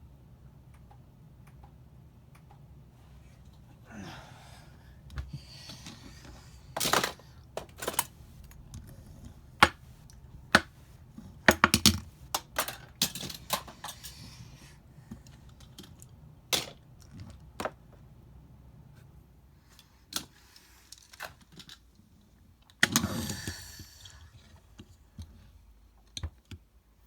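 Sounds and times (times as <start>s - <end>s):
toy cars clattering: 6.8s - 8.9s, 11.4s - 14.3s, 20.1s - 21.8s.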